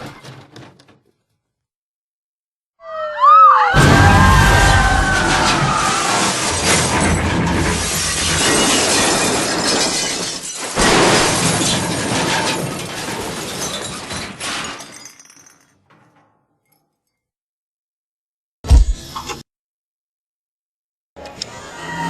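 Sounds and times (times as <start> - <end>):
cartoon glass shattering crash: 3.8 - 15.8
falling glass pieces clattering: 6.0 - 16.8.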